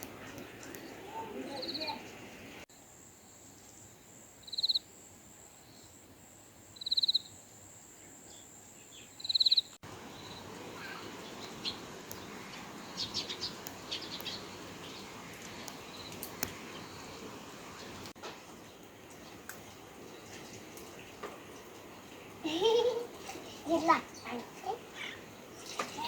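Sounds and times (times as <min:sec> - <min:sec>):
buzzy insect chirp: 0:04.0 - 0:10.4.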